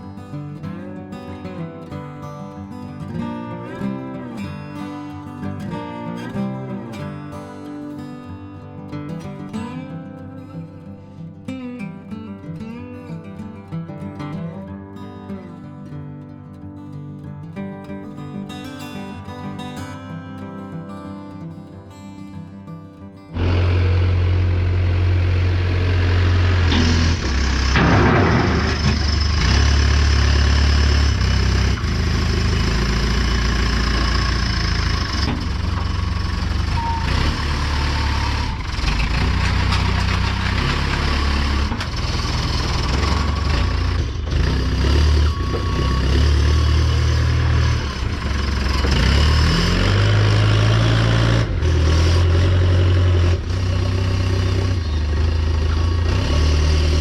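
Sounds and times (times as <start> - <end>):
combine harvester engine: 23.3 - 57.0
machinery noise: 23.3 - 57.0.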